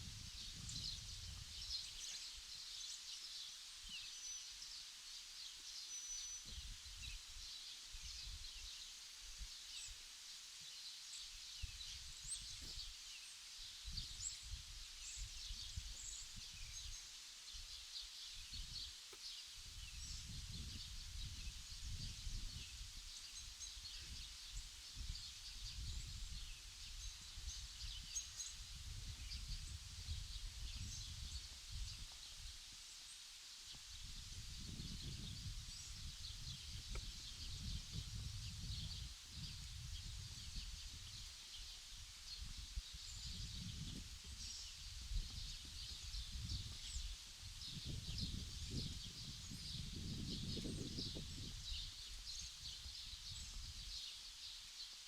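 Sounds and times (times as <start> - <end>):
wind rumbling on microphone: 0.0 - 2.2, 6.4 - 8.7, 11.6 - 12.9, 13.8 - 17.0, 19.6 - 32.8, 33.7 - 54.1
small birds chirping: 0.1 - 55.0.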